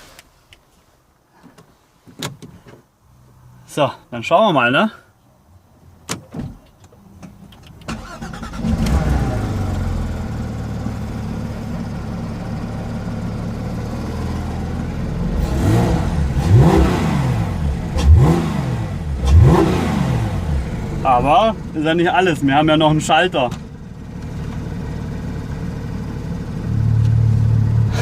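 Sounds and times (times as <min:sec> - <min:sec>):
car engine starting and idling: 0:06.1 - 0:28.0
engine revving: 0:08.0 - 0:11.3, 0:13.8 - 0:21.7, 0:26.6 - 0:28.0.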